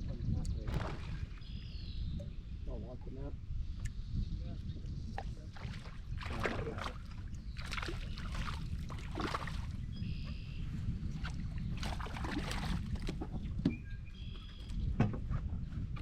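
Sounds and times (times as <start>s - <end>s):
wind and water rumble: 0.0s - 16.0s
knocks and splashes: 0.6s - 1.5s, 5.2s - 9.8s, 11.2s - 13.8s.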